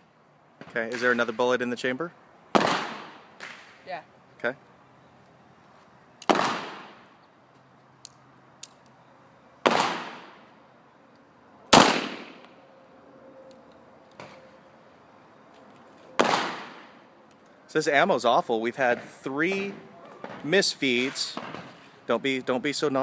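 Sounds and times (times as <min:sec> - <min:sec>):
pistol shots ringing: 0:06.2 - 0:07.1, 0:09.6 - 0:10.5, 0:11.7 - 0:12.4, 0:16.2 - 0:17.0.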